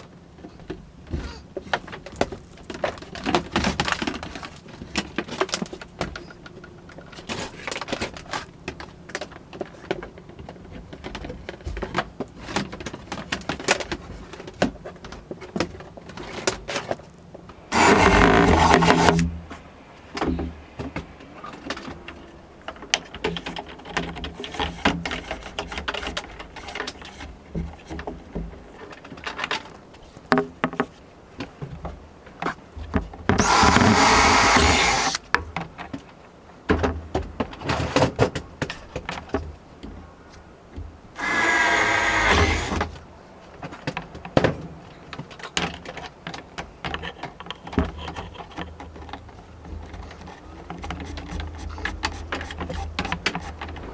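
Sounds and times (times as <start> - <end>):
power drill running: 17.7 - 19.2, 33.4 - 35.2, 41.2 - 42.8.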